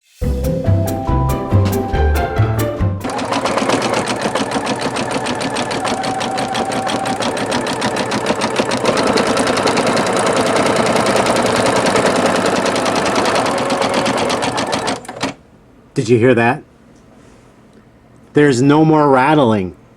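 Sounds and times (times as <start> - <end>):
embroidery machine stitching: 3.0 - 15.4.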